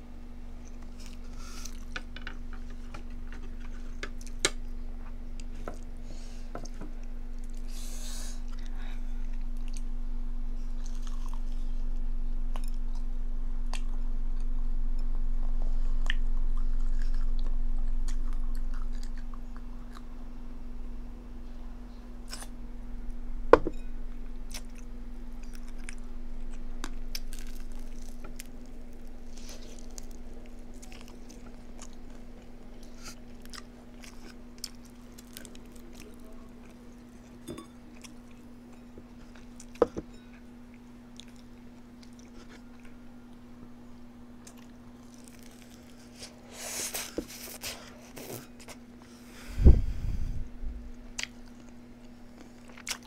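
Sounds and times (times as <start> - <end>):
steady low hum: 0.0 - 53.0
chewing and crunching: 0.6 - 4.7, 8.4 - 9.9, 10.6 - 11.9, 12.5 - 20.2, 23.8 - 43.0, 44.4 - 49.2, 51.0 - 53.0.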